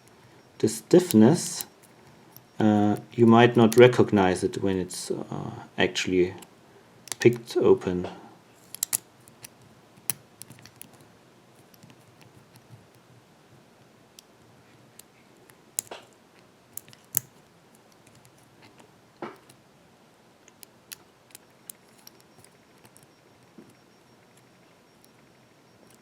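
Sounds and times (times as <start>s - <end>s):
lock pick clicking in padlock: 0.8s - 4.0s, 7.1s - 7.4s, 8.6s - 11.0s, 16.8s - 17.3s, 20.5s - 23.1s.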